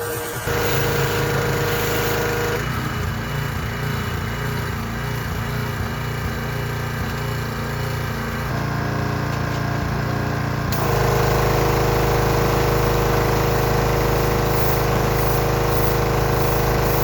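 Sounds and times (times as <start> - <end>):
water spray hiss: 0.0 - 5.2, 10.7 - 17.0
pressure washer engine running: 0.0 - 17.0.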